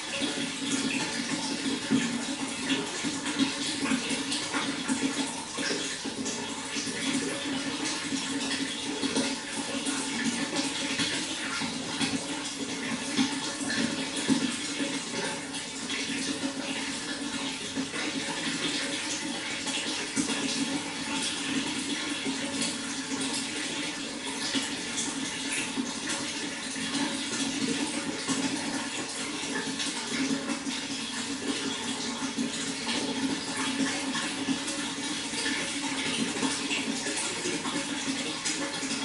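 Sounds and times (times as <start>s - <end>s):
water flowing and splashing: 0.0s - 39.0s.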